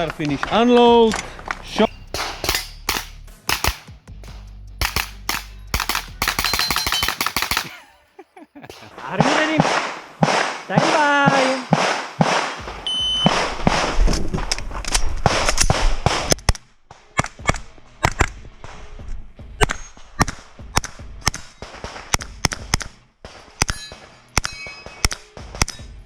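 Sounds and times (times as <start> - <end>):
carbine gunshots: 2.1 - 7.9, 8.7 - 13.9.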